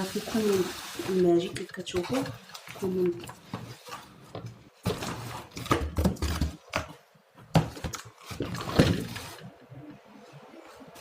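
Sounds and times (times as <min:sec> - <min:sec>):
kitchen things knocking and clattering: 0:01.4 - 0:09.3.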